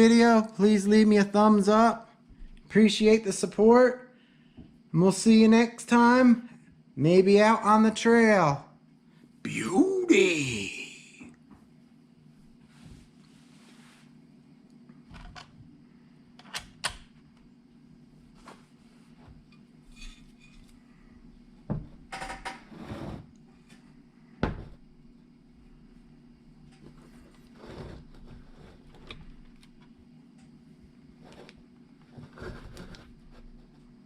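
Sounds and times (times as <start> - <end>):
low steady hum: 0.0 - 34.0.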